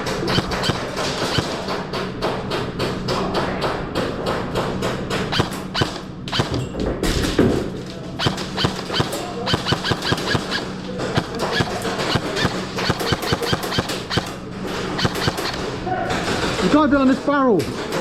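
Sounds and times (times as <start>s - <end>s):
airsoft gun shots: 0.0s - 1.8s, 5.3s - 6.7s, 8.2s - 15.7s.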